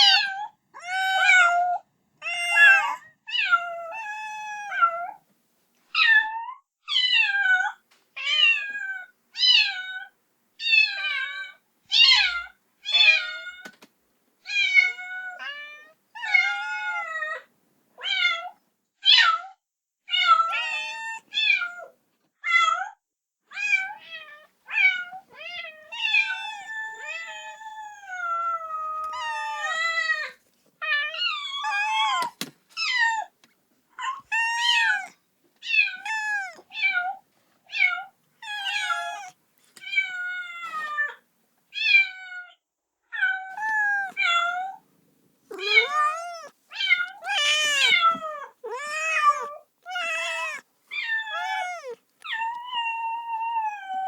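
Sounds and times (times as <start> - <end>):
kitten meowing: 0.0 - 5.0, 24.8 - 33.3, 34.0 - 37.1, 37.8 - 41.1, 43.5 - 44.8, 45.5 - 54.0.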